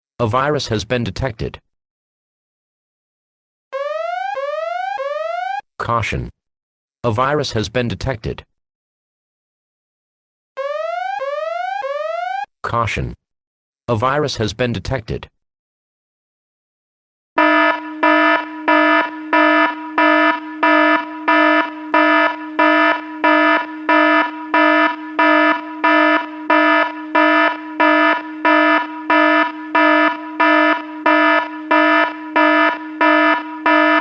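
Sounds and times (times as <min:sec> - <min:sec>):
buzzing electronic alarm beeps: 0:17.4 - 0:34.0.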